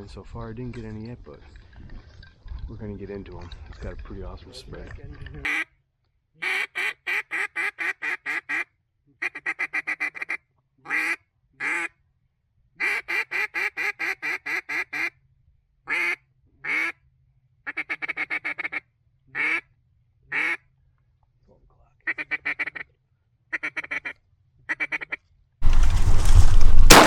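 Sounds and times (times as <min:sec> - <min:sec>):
duck quacking: 0:06.4 - 0:08.6.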